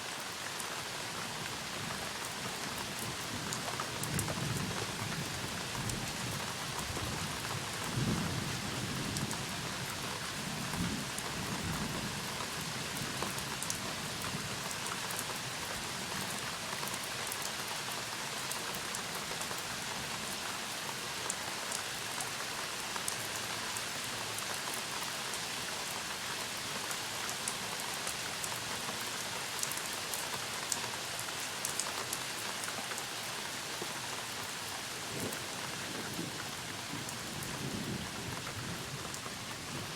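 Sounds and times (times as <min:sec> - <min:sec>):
steady rain falling: 0:00.0 - 0:39.9
low roll of thunder: 0:35.1 - 0:39.9.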